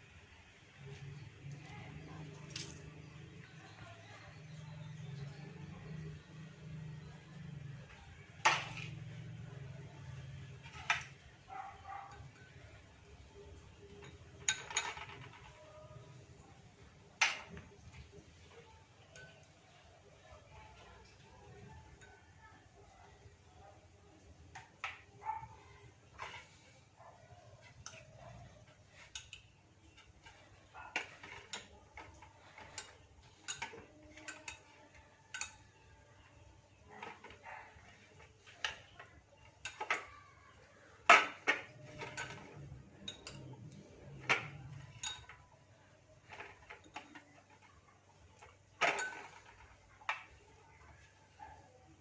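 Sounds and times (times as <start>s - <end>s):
dishware clinking and knocking: 2.0s - 16.1s, 27.6s - 45.6s, 46.2s - 51.1s.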